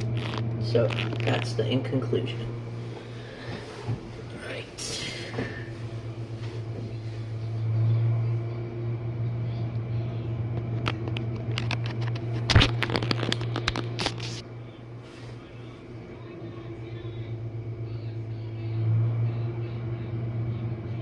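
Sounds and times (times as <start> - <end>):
dishwasher motor hum: 0.0 - 21.0.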